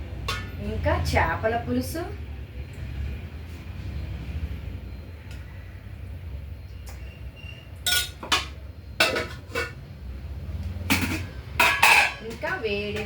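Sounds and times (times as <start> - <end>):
metal dishes clinking: 0.2 - 0.6, 7.8 - 9.8, 10.8 - 13.0.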